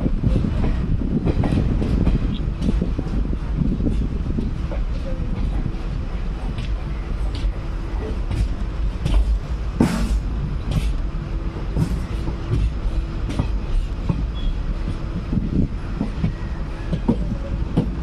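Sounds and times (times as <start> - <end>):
train rumbling: 0.0 - 18.0
train wheels clicking and knocking: 0.0 - 18.0.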